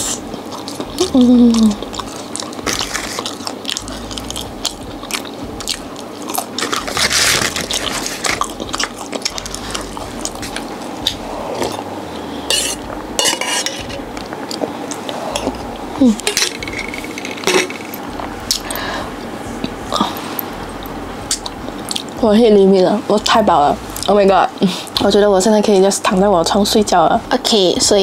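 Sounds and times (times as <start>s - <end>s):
chewing crunchy fried food: 0.0s - 22.2s
cutlery clinking against a dish: 12.5s - 14.0s.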